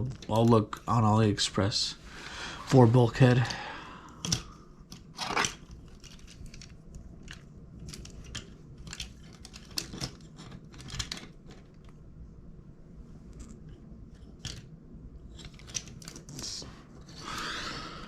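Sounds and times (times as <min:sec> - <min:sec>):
plastic toy clicking and scraping: 0:04.2 - 0:11.9, 0:15.3 - 0:16.4.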